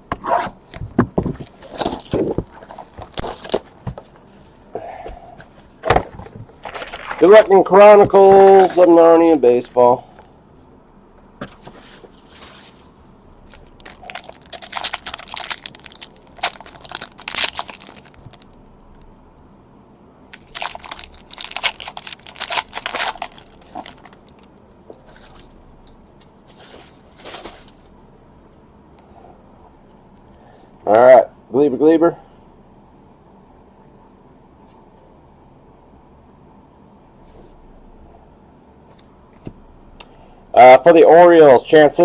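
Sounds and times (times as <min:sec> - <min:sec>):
foil wrappers crinkling and tearing: 0:01.4 - 0:03.7, 0:06.6 - 0:09.0, 0:12.1 - 0:19.0, 0:20.4 - 0:24.5.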